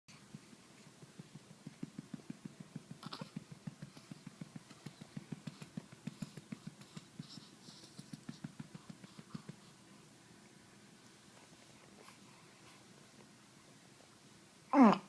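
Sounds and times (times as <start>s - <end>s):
hand patting on a back: 1.0s - 7.4s, 8.0s - 9.6s.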